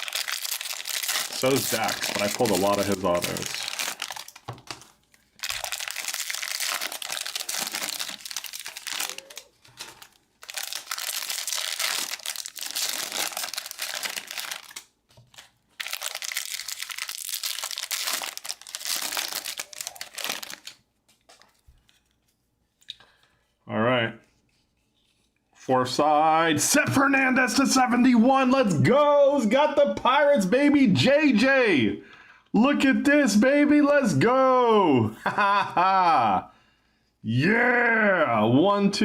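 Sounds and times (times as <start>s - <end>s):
card pack wrappers crinkling and tearing: 0.0s - 22.1s.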